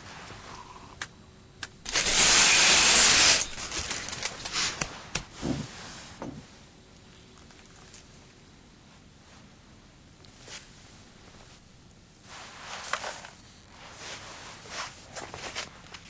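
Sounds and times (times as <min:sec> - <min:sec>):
loud burst of hissing: 0:01.8 - 0:04.6.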